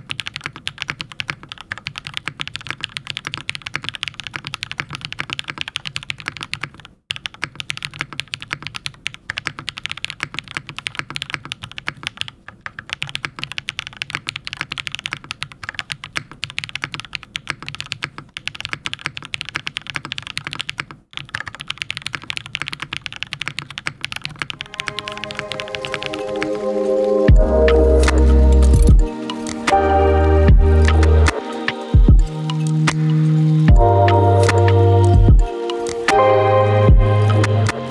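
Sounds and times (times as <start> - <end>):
fast mechanical keyboard typing: 0.0 - 26.6
music: 24.6 - 37.9.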